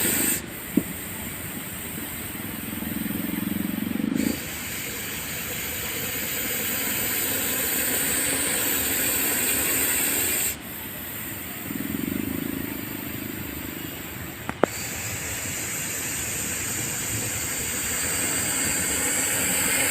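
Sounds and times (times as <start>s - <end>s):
snake hissing: 0.0s - 19.9s.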